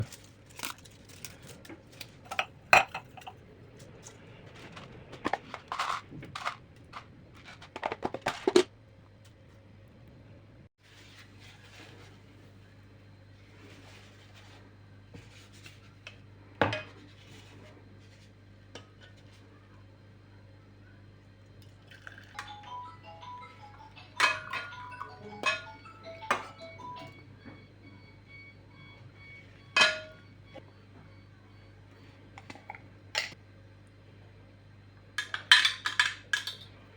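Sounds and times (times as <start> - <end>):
low steady hum: 0.0 - 36.9
kitchenware clinking: 2.3 - 3.4, 24.0 - 26.7, 29.8 - 30.2, 35.2 - 36.7
objects being handled and set down: 4.0 - 8.7.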